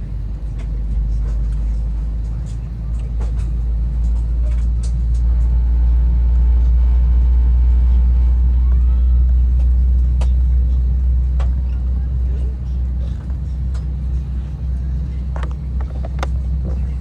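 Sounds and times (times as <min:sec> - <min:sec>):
aircraft cabin rumble: 0:00.0 - 0:17.0.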